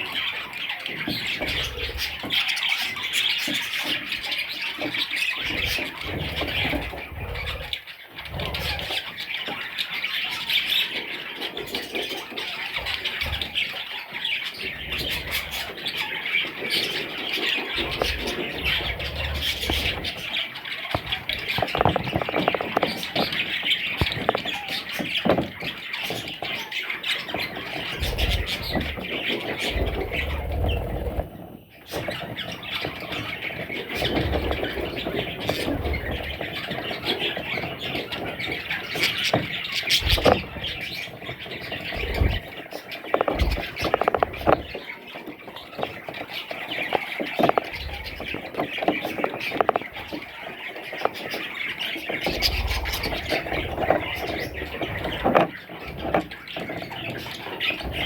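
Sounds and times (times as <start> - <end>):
budgerigars chattering and squawking: 0.0 - 58.0.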